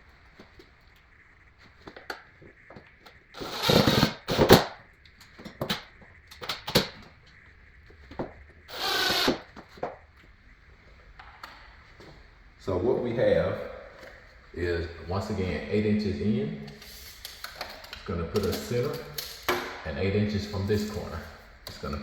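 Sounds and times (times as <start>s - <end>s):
short noisy bursts: 3.4s - 4.7s, 8.7s - 9.5s.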